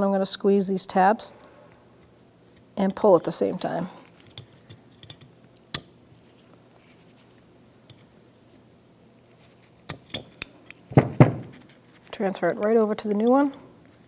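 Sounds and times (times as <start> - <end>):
dull knock: 11.0 - 11.5.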